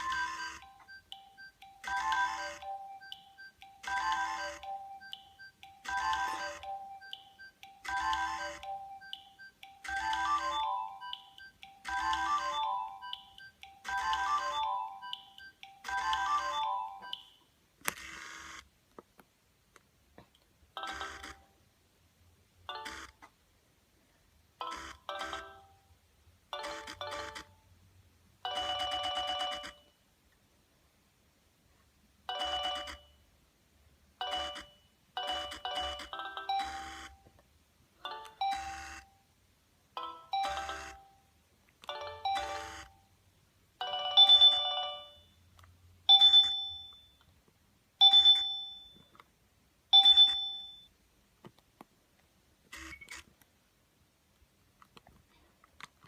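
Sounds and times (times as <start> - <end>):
electronic ringtone melody: 0.0 - 17.4, 20.8 - 21.4, 24.6 - 25.8, 26.6 - 27.5, 28.5 - 29.9, 32.3 - 33.2, 34.2 - 37.2, 38.3 - 39.2, 40.0 - 41.2, 41.9 - 43.1, 43.8 - 45.4, 46.1 - 47.2
bell-like chime: 46.1 - 47.2, 48.1 - 49.1, 50.0 - 50.9.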